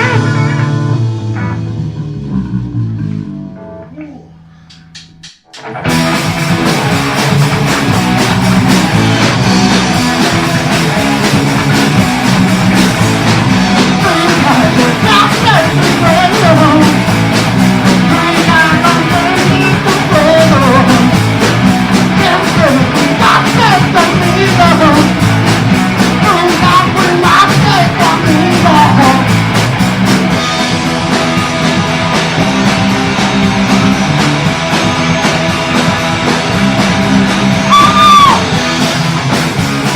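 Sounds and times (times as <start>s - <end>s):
punk rock band playing: 0.0s - 3.8s, 4.6s - 39.9s
lead vocal singing: 13.9s - 17.1s, 17.9s - 21.2s, 22.1s - 25.3s, 26.2s - 29.3s.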